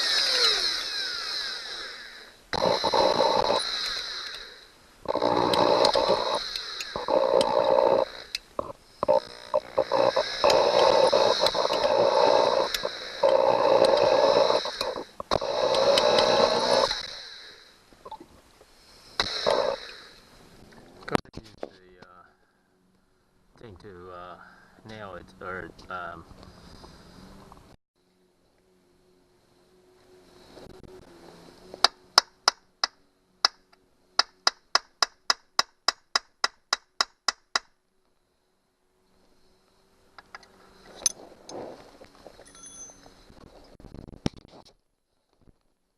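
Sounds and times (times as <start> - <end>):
electric drill boring into steel: 0.0 - 17.8, 19.1 - 20.3.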